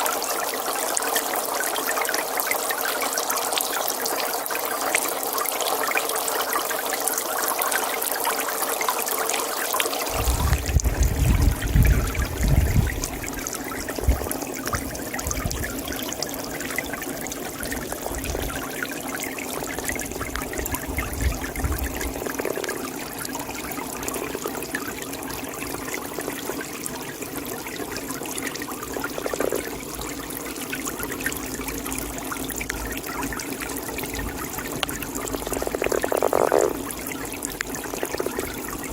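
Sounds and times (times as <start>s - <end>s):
water trickling: 0.0s - 38.9s
low rumbling bursts: 10.1s - 13.4s.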